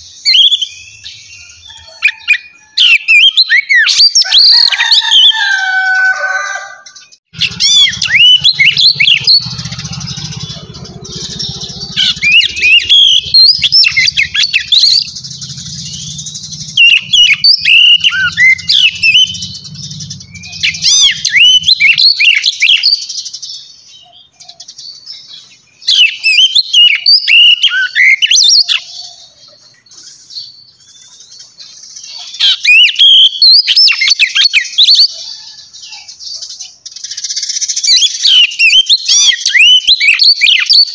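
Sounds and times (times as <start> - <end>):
birds chirping: 0.0 - 40.9
low hum: 7.4 - 22.2.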